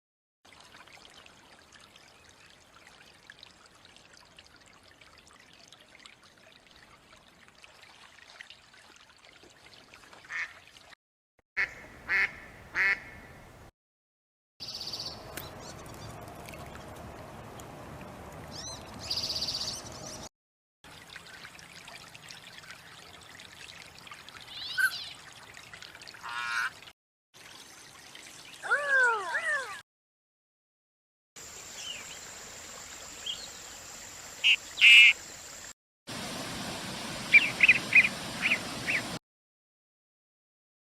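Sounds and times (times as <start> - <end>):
ducks quacking: 11.6 - 13.2.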